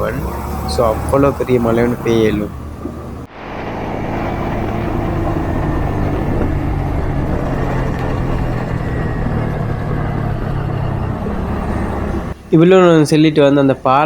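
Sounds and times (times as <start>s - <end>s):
motorcycle engine running: 0.0s - 13.1s
road and wind noise: 0.0s - 14.0s.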